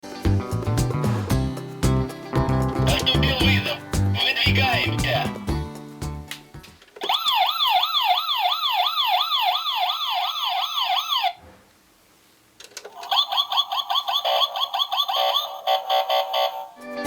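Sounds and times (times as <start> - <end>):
toy electronic siren wailing: 7.0 - 11.4, 13.0 - 16.8.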